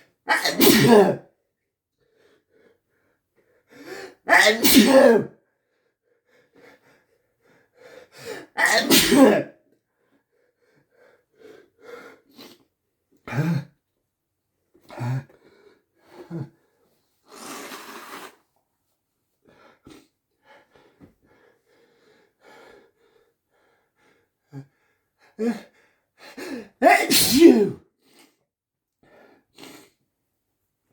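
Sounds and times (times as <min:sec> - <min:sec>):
person gasping before sneeze: 0:00.3 - 0:01.3, 0:03.8 - 0:05.4, 0:08.2 - 0:09.6, 0:26.4 - 0:27.8
person sniffling: 0:26.4 - 0:28.2.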